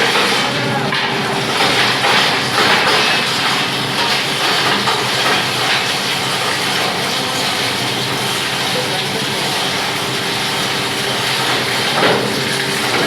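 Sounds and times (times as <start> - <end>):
plastic grinder with blower running: 0.0 - 13.0.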